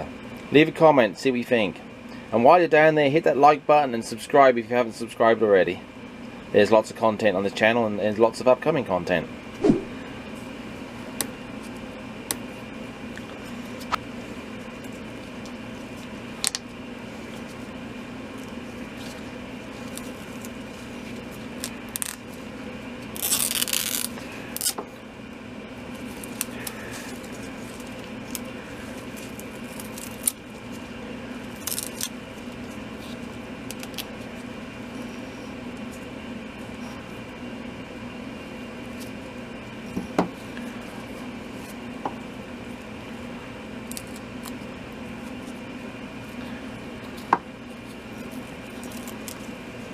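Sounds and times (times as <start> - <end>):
steady low hum: 0.0 - 49.9
tape ripping: 23.1 - 24.8, 31.5 - 32.1.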